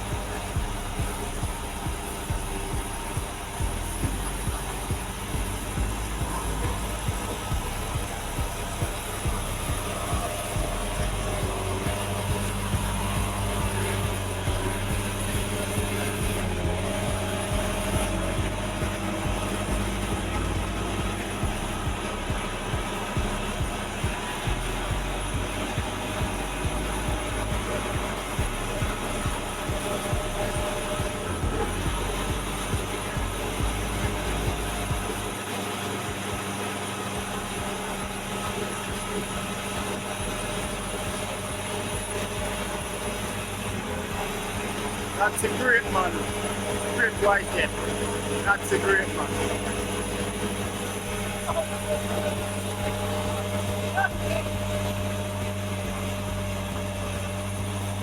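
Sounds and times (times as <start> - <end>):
vehicle engine droning: 0.0 - 58.0.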